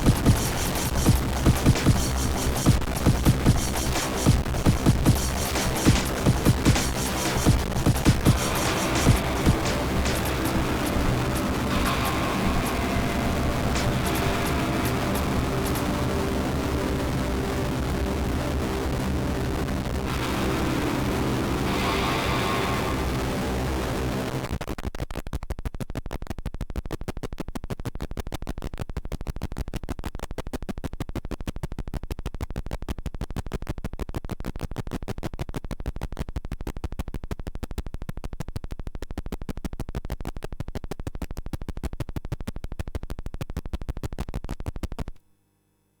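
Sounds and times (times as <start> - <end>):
harsh clicking pulses: 0.0 - 24.6
harsh noise wash: 0.0 - 24.6.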